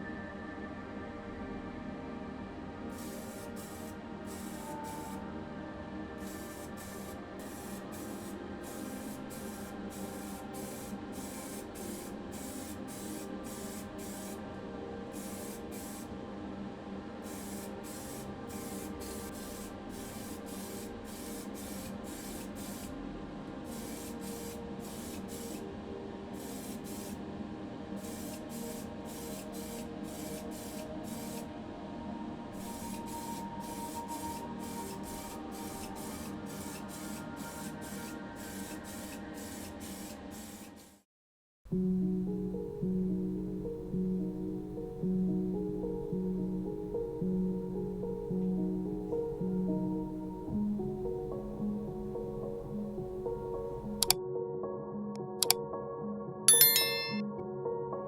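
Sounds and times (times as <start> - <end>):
spray paint hissing bursts: 2.9 - 5.2, 6.2 - 14.4, 15.2 - 16.1, 17.2 - 22.9, 23.7 - 25.6, 26.4 - 27.2, 28.0 - 31.5, 32.6 - 41.0.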